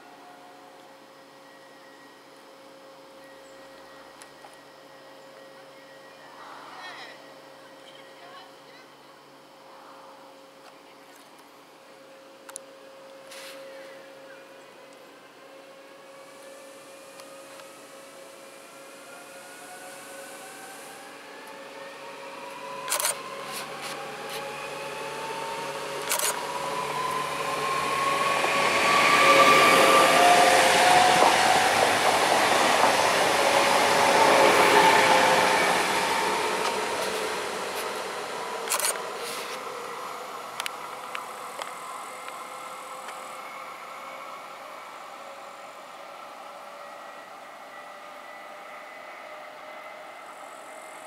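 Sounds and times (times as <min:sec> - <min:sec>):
electric train motors whining: 0:12.0 - 0:51.0.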